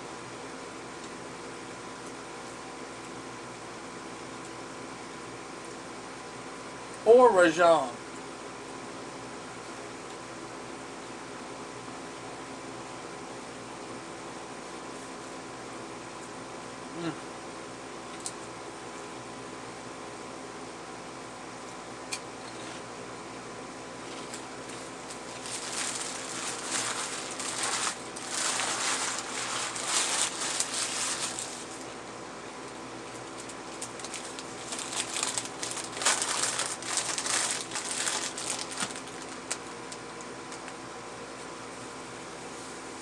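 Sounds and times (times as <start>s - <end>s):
steady background hum: 0.0s - 43.0s
food packaging crinkling: 24.0s - 32.0s, 32.6s - 40.8s.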